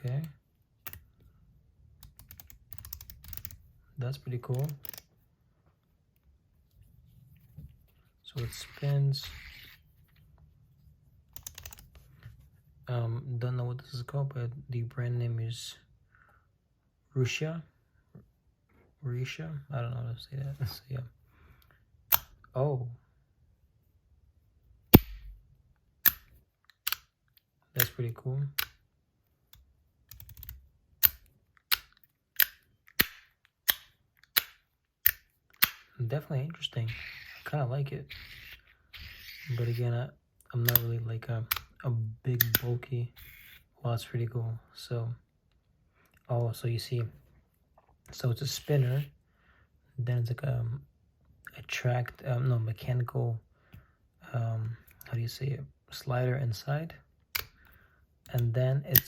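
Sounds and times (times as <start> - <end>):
fidget toy sliders clicking: 2.0 - 3.6, 4.5 - 5.1, 38.1 - 39.8.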